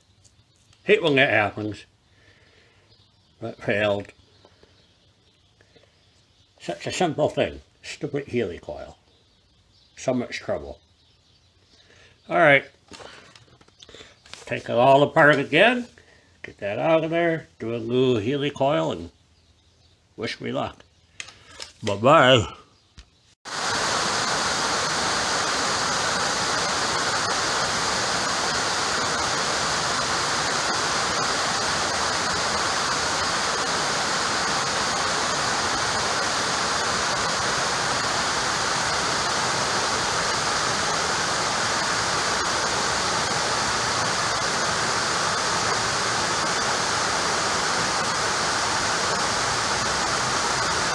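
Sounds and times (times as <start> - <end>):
steady rushing noise: 23.5 - 50.9.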